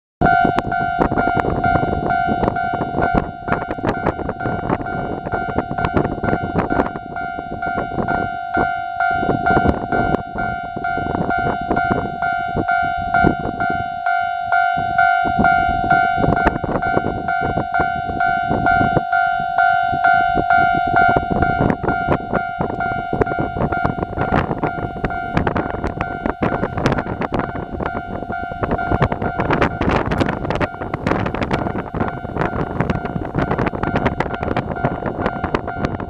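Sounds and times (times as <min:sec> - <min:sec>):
level-crossing alarm ringing: 0:00.2 - 0:36.0
wheels knocking on rails: 0:20.3 - 0:36.0.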